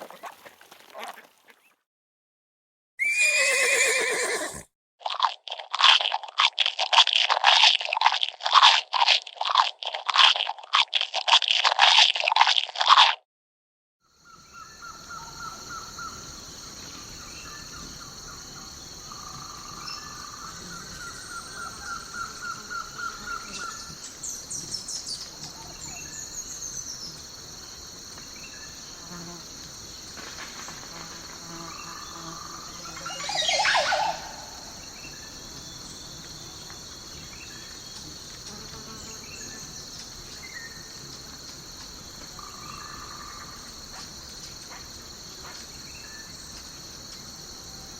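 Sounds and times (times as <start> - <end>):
insect and cricket chorus: 3.0 - 4.6, 5.2 - 12.5, 14.0 - 47.9
sweeping bird call: 32.9 - 34.8.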